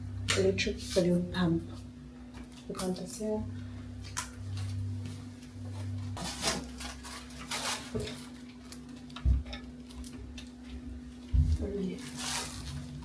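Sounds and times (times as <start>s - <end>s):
faint electrical hum: 0.0s - 13.0s
packets rustling: 5.7s - 10.8s, 11.4s - 13.0s.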